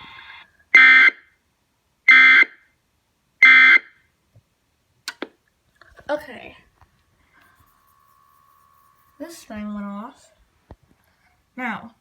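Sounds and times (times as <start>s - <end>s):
buzzing digital bursts: 7.3s - 10.4s.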